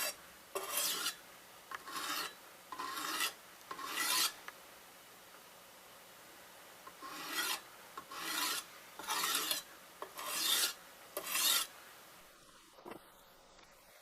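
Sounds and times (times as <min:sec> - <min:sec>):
sharpening stone stroking knife blade: 0:00.0 - 0:01.2, 0:01.8 - 0:04.4, 0:06.9 - 0:11.7.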